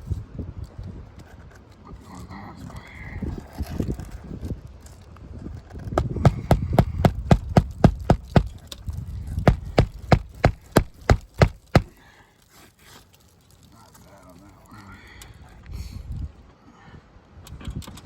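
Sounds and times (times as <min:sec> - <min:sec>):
hammer striking: 0:06.0 - 0:08.6, 0:09.5 - 0:11.9.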